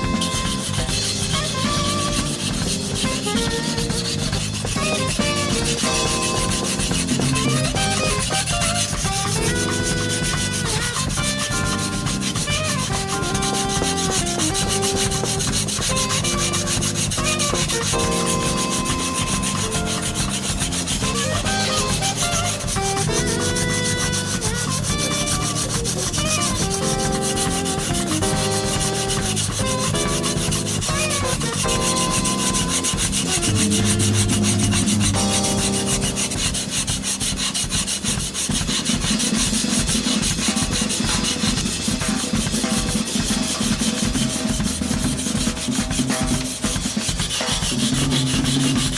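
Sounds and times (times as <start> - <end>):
melody: 0.0 - 37.6
knife grinding on whetstone: 0.0 - 48.9.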